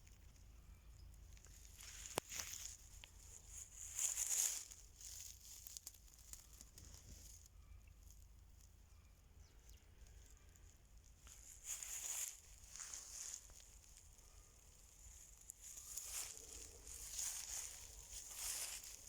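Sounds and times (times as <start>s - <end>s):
faint rustling and crackling: 1.2s - 8.8s, 9.9s - 19.0s.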